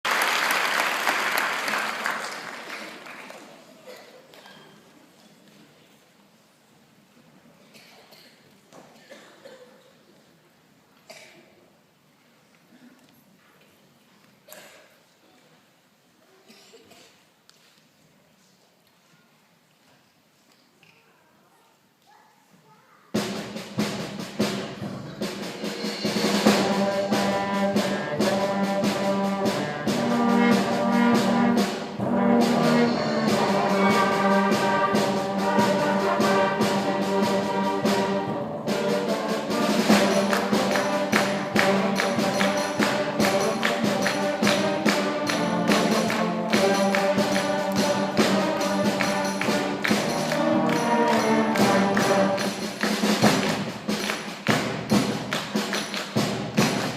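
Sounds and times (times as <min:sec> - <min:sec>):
brass and wind chords: 0:26.4 - 0:52.6
percussion beat with tambourine: 0:38.8 - 0:56.9.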